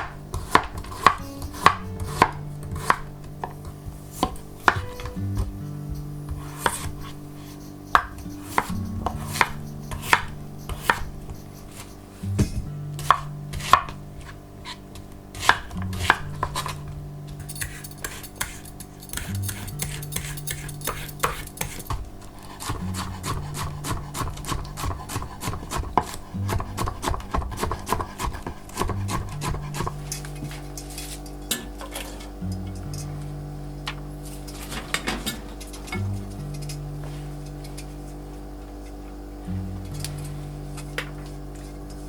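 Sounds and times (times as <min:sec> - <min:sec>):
knife chopping on cutting board: 0:00.0 - 0:05.5, 0:06.3 - 0:07.2, 0:07.9 - 0:14.8, 0:15.4 - 0:16.8, 0:17.6 - 0:30.0
utensils clinking against dishes: 0:17.4 - 0:22.0, 0:30.1 - 0:33.1.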